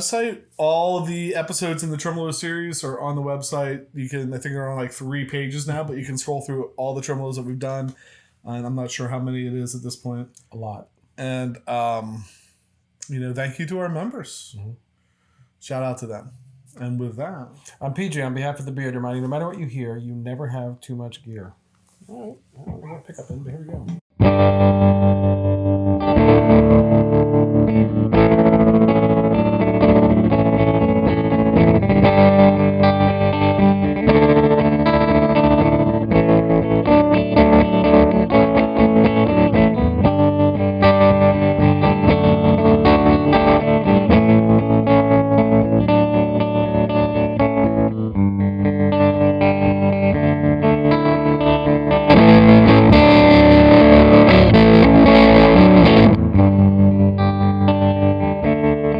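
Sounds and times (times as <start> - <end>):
electric guitar chords with tremolo: 24.2 - 58.9.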